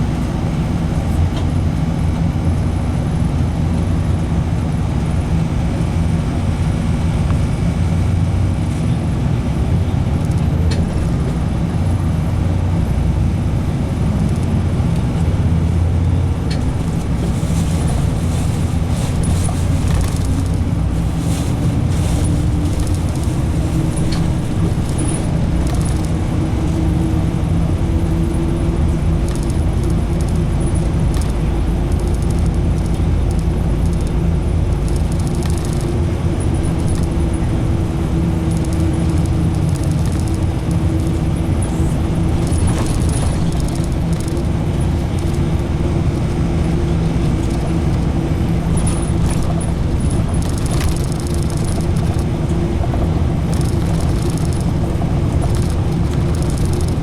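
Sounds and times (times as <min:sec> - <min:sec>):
bus engine drone: 0:00.0 - 0:57.0
road noise: 0:00.0 - 0:57.0
light rattles and ticks: 0:16.4 - 0:26.7, 0:29.2 - 0:37.4, 0:38.5 - 0:45.4, 0:46.1 - 0:57.0.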